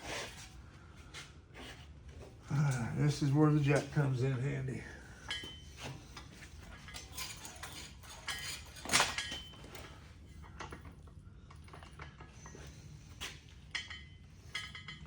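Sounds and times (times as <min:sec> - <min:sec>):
metal tools and parts clanking: 0:05.2 - 0:15.0.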